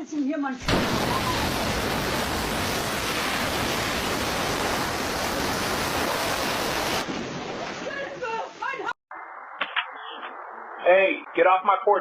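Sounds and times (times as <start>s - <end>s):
loud steady hiss: 0.6s - 7.1s.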